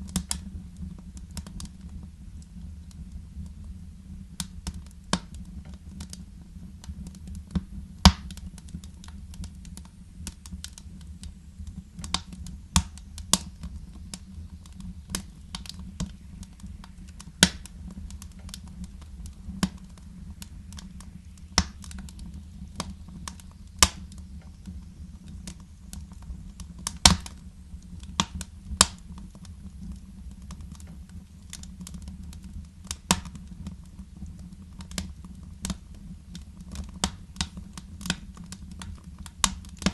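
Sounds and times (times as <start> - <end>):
fire crackling: 0.0 - 39.9
low rumble: 11.0 - 30.5.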